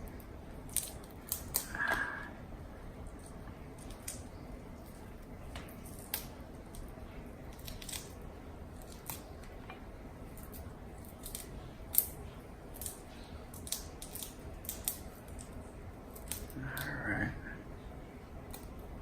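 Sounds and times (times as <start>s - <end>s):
shrimp shell cracking: 0.6s - 2.2s, 7.5s - 8.2s, 8.8s - 9.5s, 10.3s - 16.9s.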